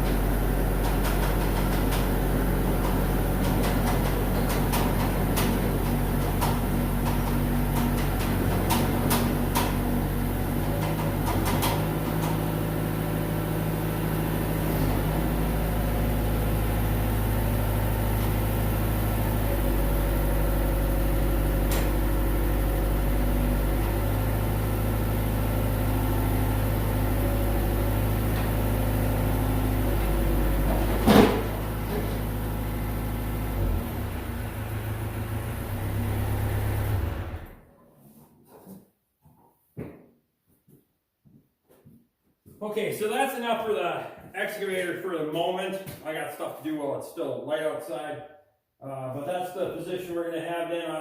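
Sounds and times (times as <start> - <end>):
diesel excavator engine running: 0.0 - 37.7
loud clunk: 30.7 - 32.2.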